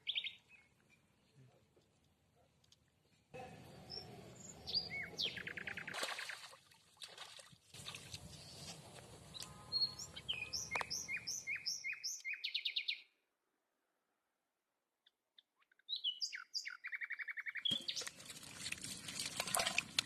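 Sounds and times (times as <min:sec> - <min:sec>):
bird chirps and trills: 0:09.3 - 0:13.1, 0:15.4 - 0:18.1.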